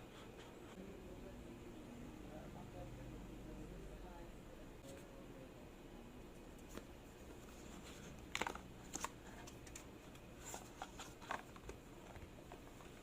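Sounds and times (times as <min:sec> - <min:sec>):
packaging rustling and clicking: 0:08.2 - 0:13.0.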